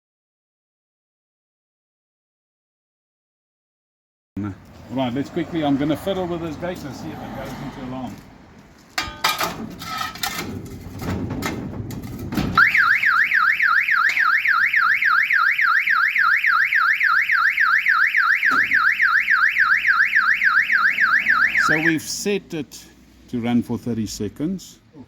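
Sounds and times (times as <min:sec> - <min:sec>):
gate knocking and rattling: 0:09.0 - 0:12.6
electronic alarm siren wailing: 0:12.6 - 0:21.9.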